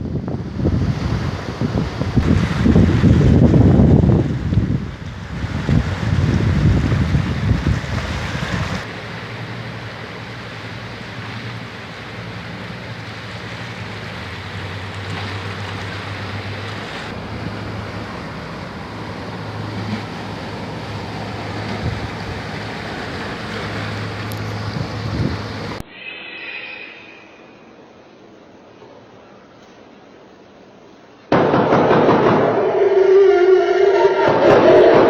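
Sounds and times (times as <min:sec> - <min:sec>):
wind buffeting microphone: 0:00.0 - 0:08.9, 0:31.3 - 0:35.0
steady rushing noise: 0:25.7 - 0:28.9, 0:31.3 - 0:35.0
low hum: 0:25.8 - 0:29.4.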